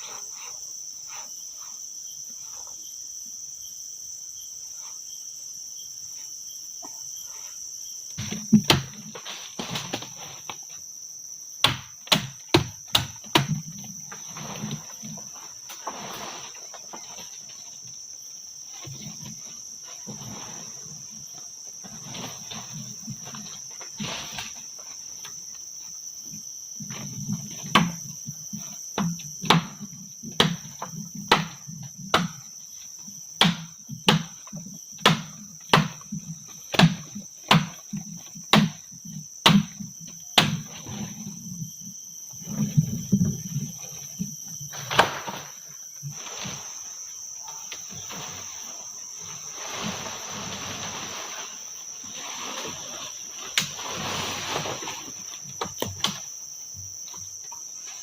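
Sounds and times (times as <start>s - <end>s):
crickets chirping: 0.0s - 58.0s.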